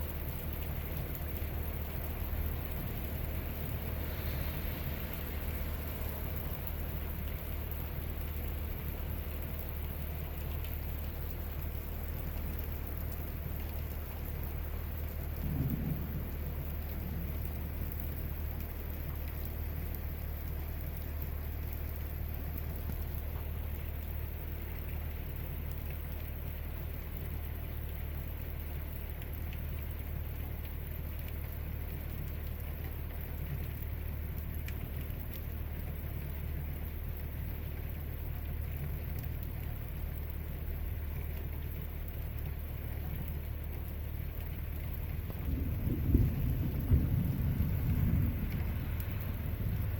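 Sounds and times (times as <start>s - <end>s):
heavy rain falling: 0.0s - 49.9s
low rumble of thunder: 12.0s - 23.3s, 44.4s - 49.9s.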